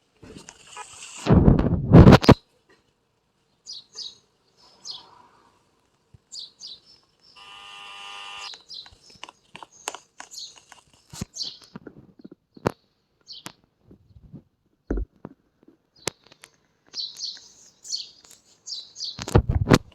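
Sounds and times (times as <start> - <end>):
bird chirping: 3.4 - 5.5, 6.2 - 13.6, 15.9 - 19.3.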